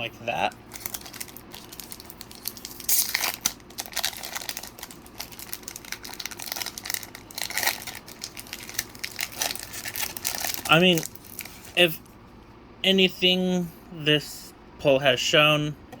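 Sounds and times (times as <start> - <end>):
foil wrapper crinkling and tearing: 0.3 - 11.8.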